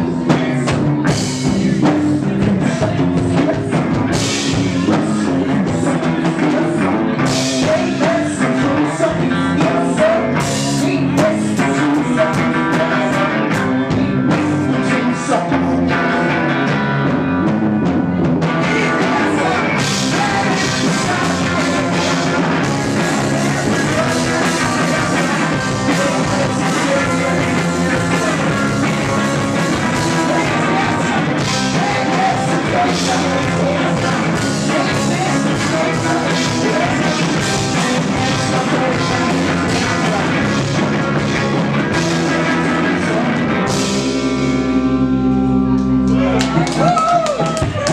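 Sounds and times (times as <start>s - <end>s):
person singing: 0.0s - 17.1s, 18.3s - 44.6s
drums: 0.0s - 47.9s
rock band playing live: 0.0s - 47.9s.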